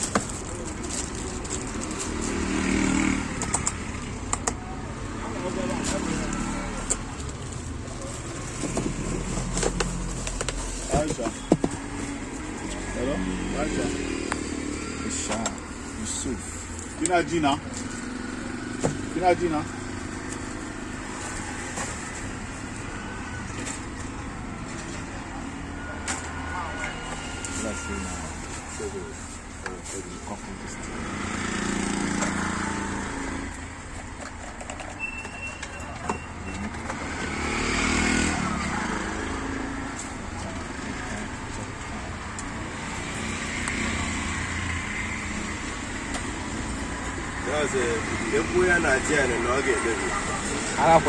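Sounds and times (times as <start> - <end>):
road traffic: 0.0 - 51.0
vehicle engine passing: 12.2 - 22.2, 36.9 - 51.0.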